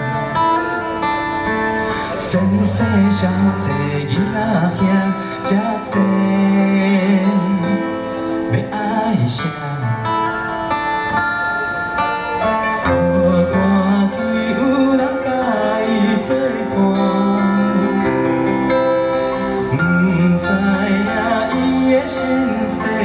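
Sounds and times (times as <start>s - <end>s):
guitar melody: 0.0s - 23.0s
live band playing pop music: 0.0s - 23.0s.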